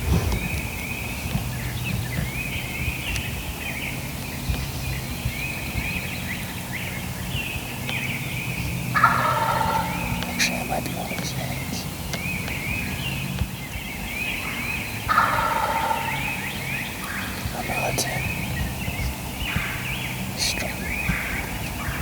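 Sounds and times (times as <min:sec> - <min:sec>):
songbirds singing: 0:00.0 - 0:22.0
turkey gobbling: 0:09.0 - 0:10.7, 0:15.1 - 0:16.3.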